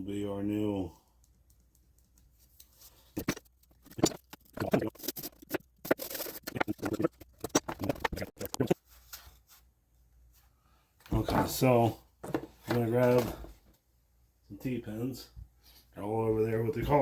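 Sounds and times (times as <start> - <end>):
scratchy rustling of parts: 1.5 - 9.7.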